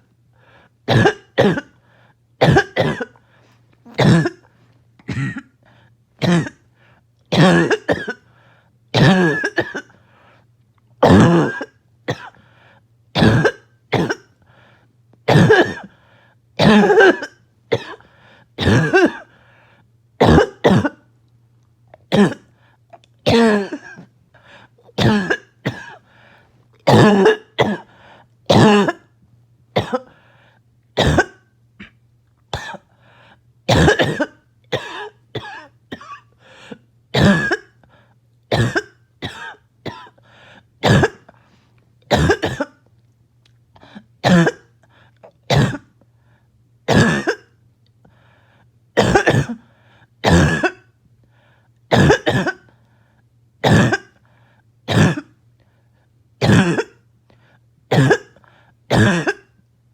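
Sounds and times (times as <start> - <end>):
person coughing harshly: 0.9 - 1.8, 2.4 - 3.2, 3.9 - 5.6, 6.2 - 6.6, 7.3 - 8.3, 9.0 - 10.0, 11.0 - 12.4, 13.2 - 14.4, 15.3 - 16.0, 16.6 - 18.0, 18.6 - 19.4, 20.2 - 21.1, 22.1 - 22.5, 23.2 - 24.1, 24.8 - 26.1, 26.8 - 29.1, 29.8 - 30.2, 31.0 - 32.0, 32.6 - 32.9, 33.7 - 37.8, 38.5 - 40.2, 40.8 - 41.4, 42.1 - 42.8, 43.8 - 44.8, 45.5 - 45.9, 46.9 - 47.6, 49.0 - 50.9, 51.9 - 52.7, 53.6 - 54.2, 54.9 - 55.4, 56.4 - 57.0, 57.9 - 59.6.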